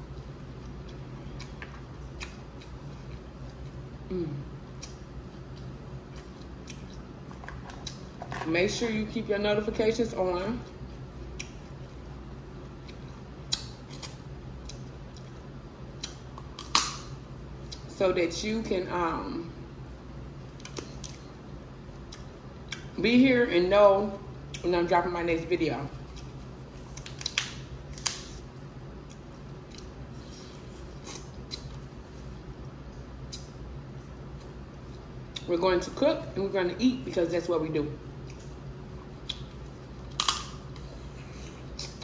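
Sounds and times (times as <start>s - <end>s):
steady low hum: 0.0s - 42.0s
crab shell cracking: 40.1s - 40.6s.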